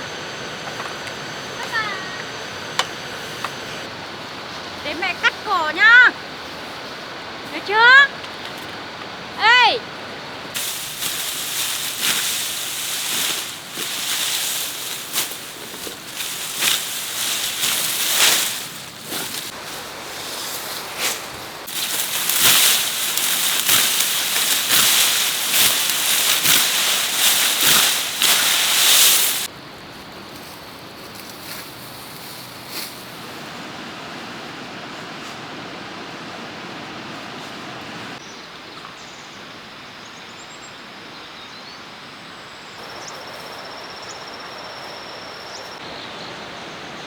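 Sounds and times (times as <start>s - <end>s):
faint outdoor hiss: 0.0s - 47.0s
grass swishing under cutting strokes: 10.6s - 29.5s.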